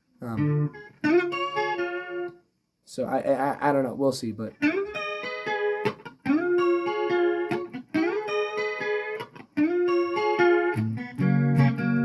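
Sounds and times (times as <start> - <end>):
electric guitar lead: 0.2 - 2.4, 4.6 - 12.0.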